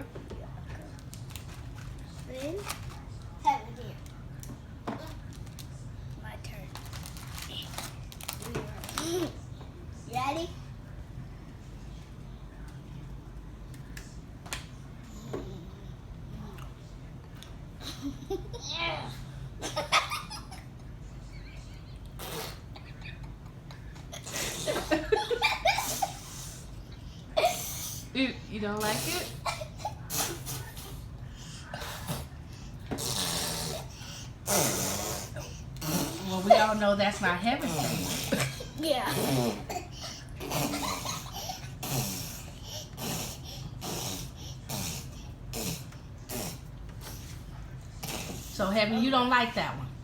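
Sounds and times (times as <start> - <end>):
low steady hum: 0.0 - 50.0
children laughing: 19.6 - 20.8, 22.7 - 26.3, 39.5 - 41.8
people laughing: 22.9 - 26.2.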